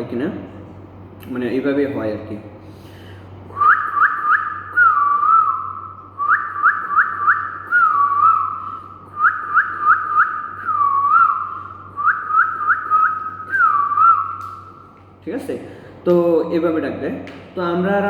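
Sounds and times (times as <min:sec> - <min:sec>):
man whistling bird song: 0:03.5 - 0:14.9.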